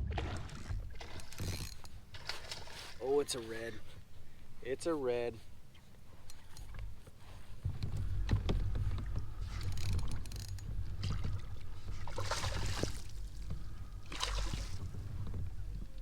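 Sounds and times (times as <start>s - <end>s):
water splashing around kayak: 0.0s - 16.0s.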